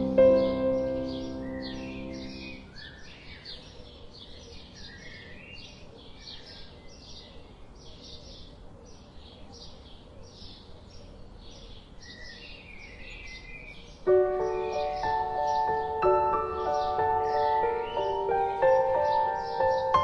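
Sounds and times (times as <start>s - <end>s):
faint steady hiss: 0.0s - 2.8s
soft music with piano notes: 0.0s - 2.9s, 14.1s - 20.0s
small songbirds chirping: 0.0s - 20.0s.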